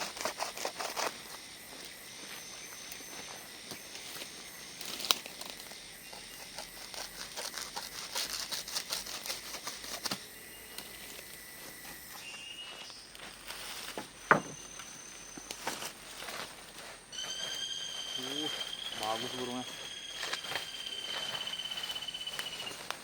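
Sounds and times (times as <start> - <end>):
insect tones: 0.0 - 23.0
bird chirps: 12.0 - 13.2, 14.1 - 15.9, 17.1 - 23.0
sharp knock: 14.3 - 14.6.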